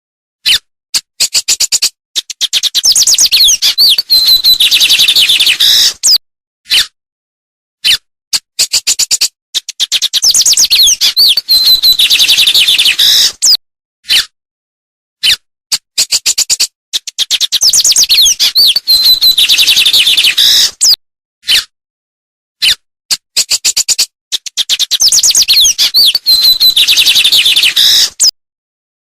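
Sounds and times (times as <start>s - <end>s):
songbird singing: 2.4s - 6.2s, 9.8s - 13.6s, 17.3s - 20.7s, 24.6s - 28.3s.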